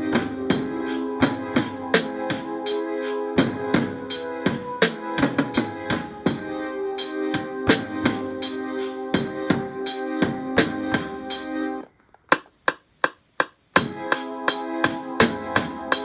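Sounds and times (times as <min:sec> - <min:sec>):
sustained keyboard chords: 0:00.0 - 0:11.8, 0:13.8 - 0:16.0
drum machine kick and snare: 0:00.1 - 0:02.4, 0:07.4 - 0:08.3, 0:09.2 - 0:11.1, 0:12.3 - 0:14.2.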